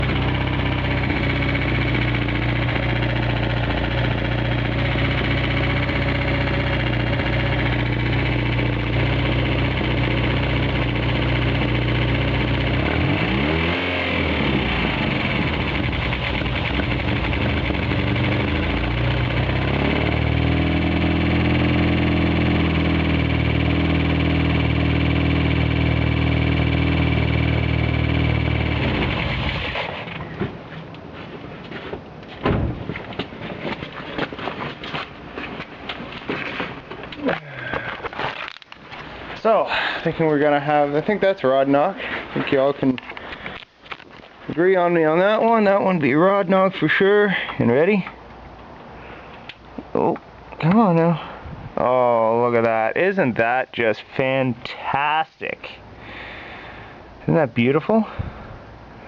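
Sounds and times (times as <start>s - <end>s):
engine knocking: 0.0s - 30.2s
car engine idling: 0.0s - 30.4s
engine revving: 0.0s - 30.4s.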